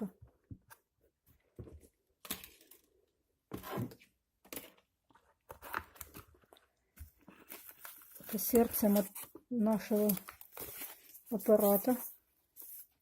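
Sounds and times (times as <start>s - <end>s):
packaging rustling and crinkling: 5.4s - 13.0s.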